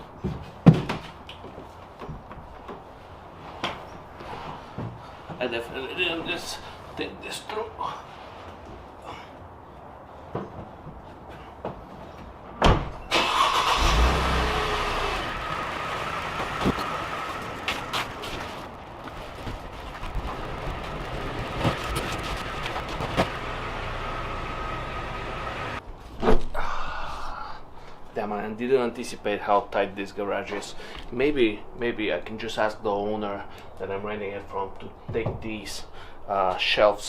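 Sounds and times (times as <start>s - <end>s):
car engine starting and running: 13.1s - 18.3s, 20.3s - 25.8s.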